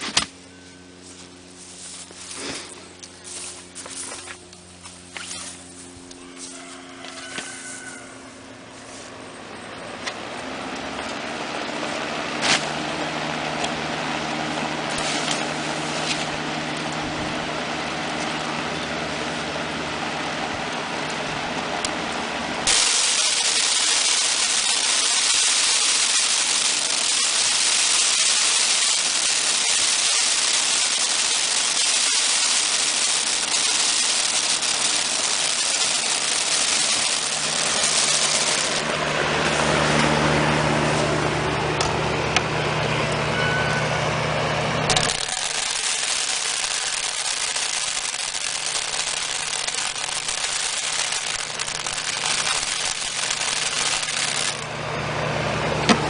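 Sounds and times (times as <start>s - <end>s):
blower motor running: 0.0s - 56.0s
loud rush of air: 2.1s - 3.8s.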